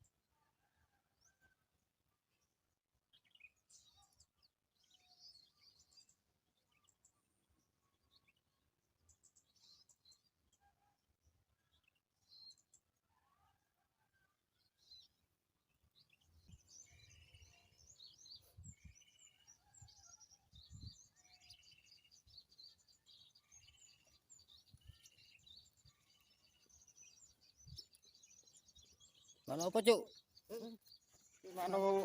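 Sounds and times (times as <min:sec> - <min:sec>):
small birds chirping: 0:03.1 - 0:10.9, 0:14.6 - 0:32.0.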